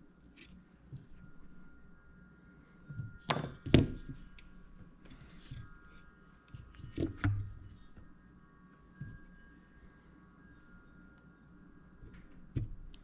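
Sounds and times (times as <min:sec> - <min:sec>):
faint steady tones: 0:00.0 - 0:13.0
tools knocking on workbench: 0:03.3 - 0:04.0.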